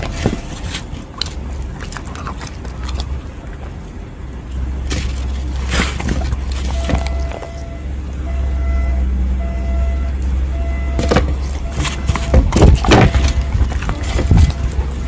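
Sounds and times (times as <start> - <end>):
dog chewing food: 0.0 - 7.6, 11.0 - 15.0
steady low rumble: 0.0 - 15.0
faint repeating tone: 6.8 - 12.4.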